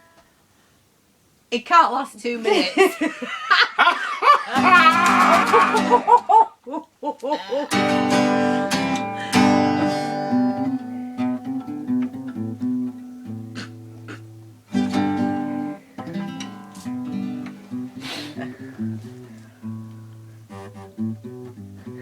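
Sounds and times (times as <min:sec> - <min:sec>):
acoustic guitar strumming and picking: 0:04.5 - 0:06.2, 0:07.7 - 0:22.0.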